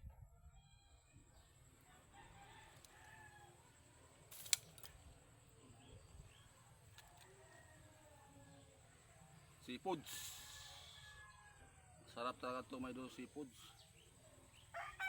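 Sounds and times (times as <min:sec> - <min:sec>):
sharp click: 0:04.3 - 0:05.0.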